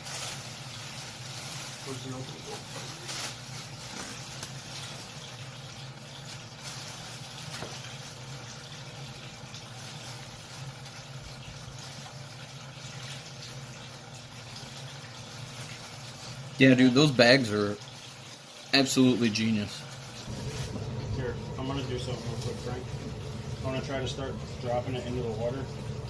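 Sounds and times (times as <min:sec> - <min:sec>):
water running and splashing: 0:00.0 - 0:26.0
low steady hum: 0:20.2 - 0:26.0.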